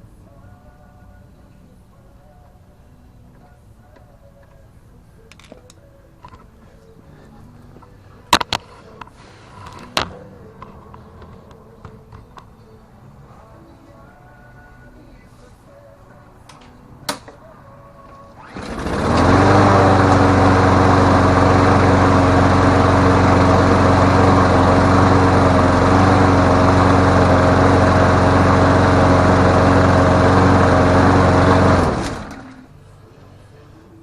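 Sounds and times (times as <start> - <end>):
lawn mower engine running: 18.4 - 32.7.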